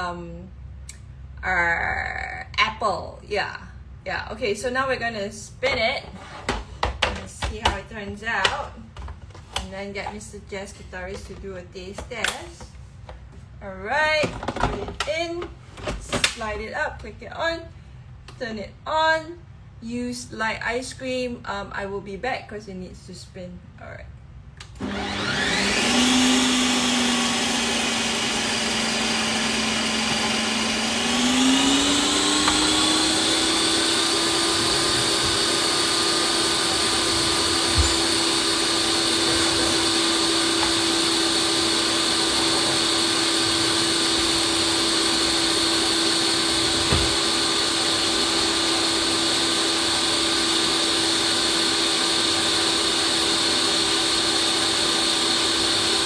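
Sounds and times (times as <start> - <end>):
ice cream maker motor whine: 24.8 - 56.0.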